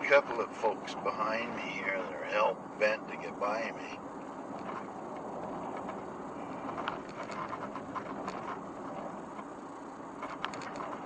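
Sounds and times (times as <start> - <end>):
road and engine noise in cabin: 0.0 - 11.0
light clicks and rattles: 4.2 - 11.0.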